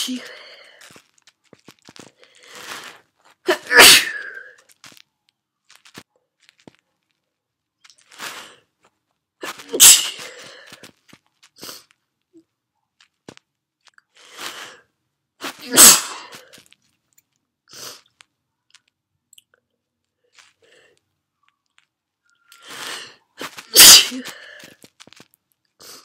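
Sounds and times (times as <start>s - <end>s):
woman sneezing: 0.0s - 0.5s, 3.5s - 4.5s, 9.4s - 10.8s, 15.4s - 16.5s, 22.8s - 24.7s
breaths drawn in: 0.0s - 4.9s, 8.0s - 8.8s, 9.4s - 12.0s, 14.2s - 16.7s, 22.4s - 25.2s.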